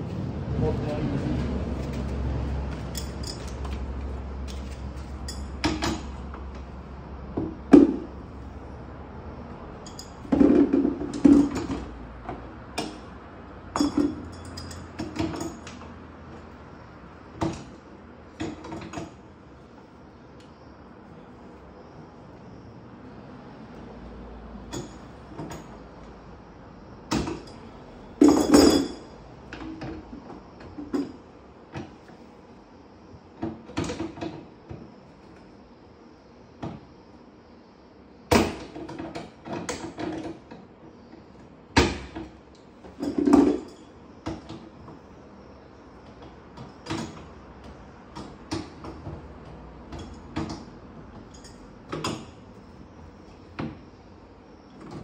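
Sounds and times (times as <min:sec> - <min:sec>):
hand tools clanking on metal: 0:02.8 - 0:03.8, 0:13.7 - 0:15.8, 0:28.2 - 0:29.1.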